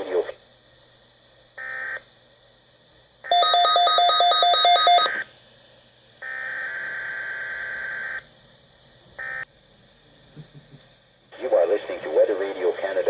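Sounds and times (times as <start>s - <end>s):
shrill pulsing beep: 3.3s - 5.2s.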